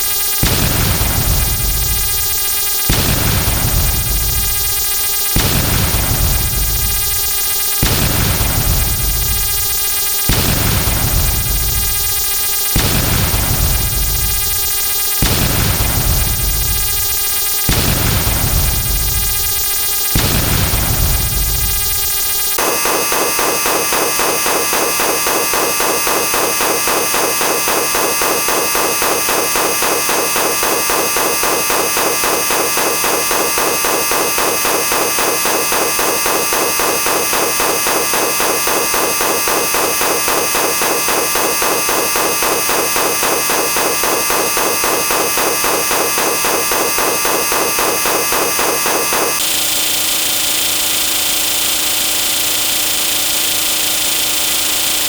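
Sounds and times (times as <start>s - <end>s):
dense harsh pulsing sound effects: 0.0s - 49.6s
steady tones: 22.6s - 49.4s.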